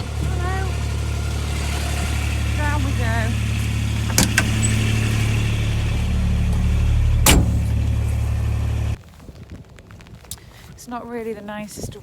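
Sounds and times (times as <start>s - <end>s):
vehicle engine droning: 0.0s - 9.0s.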